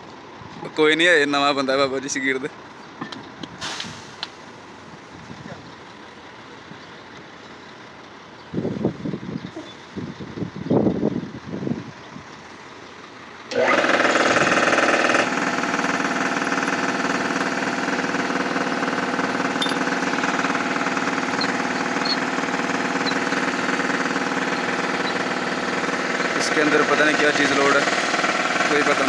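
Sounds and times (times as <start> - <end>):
buzzing machine running: 13.5 - 28.7.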